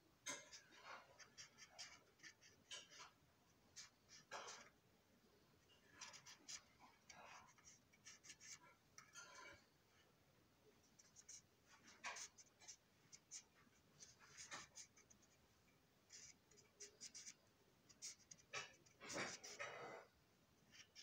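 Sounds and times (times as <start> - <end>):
pen scratching plastic ribs: 0.3 - 3.2, 5.9 - 9.6, 11.0 - 15.4, 16.1 - 20.0, 20.7 - 21.0.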